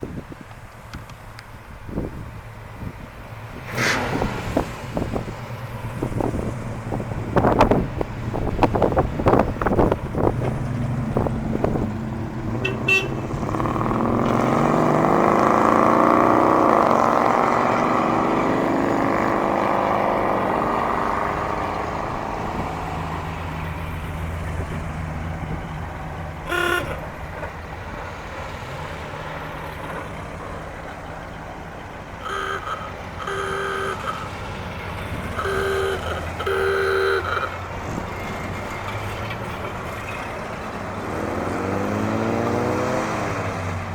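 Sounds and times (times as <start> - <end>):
tractor engines running: 0.0 - 43.9
horn toots: 12.6 - 13.7, 26.4 - 27.2, 32.2 - 37.6.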